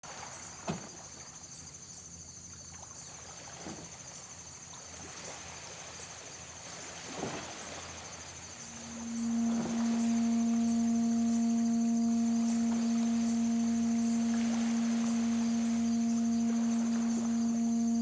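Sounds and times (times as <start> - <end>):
high chirring of insects: 8.0 - 18.0
low electronic synth tone: 8.6 - 18.0.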